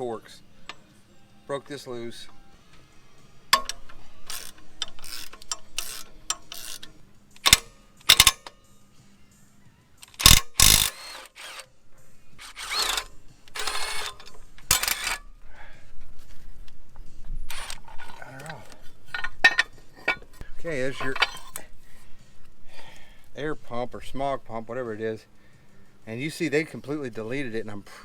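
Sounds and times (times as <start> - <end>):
ratchet wrench clicking: 3.5 - 8.6, 10.0 - 11.7, 12.4 - 15.2, 17.5 - 21.7
sharp metal clacks: 3.5 - 8.6, 10.0 - 11.6.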